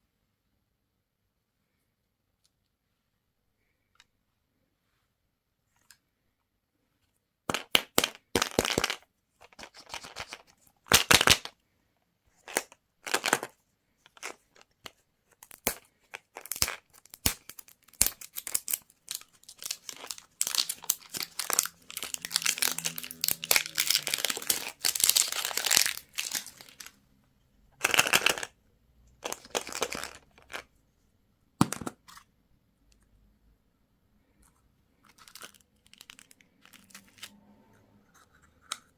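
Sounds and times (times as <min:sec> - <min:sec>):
candy wrappers crinkling: 0:15.4 - 0:27.0, 0:27.8 - 0:28.5, 0:29.2 - 0:30.7, 0:35.0 - 0:37.3.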